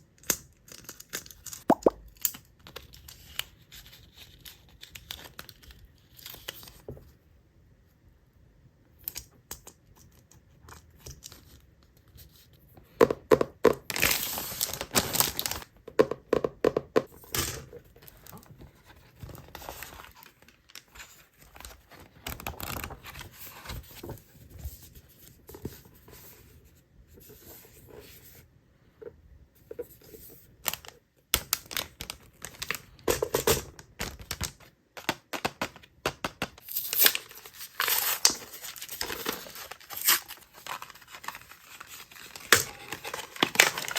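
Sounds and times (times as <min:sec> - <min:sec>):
packaging tearing and rustling: 0:14.0 - 0:15.6, 0:36.7 - 0:43.9.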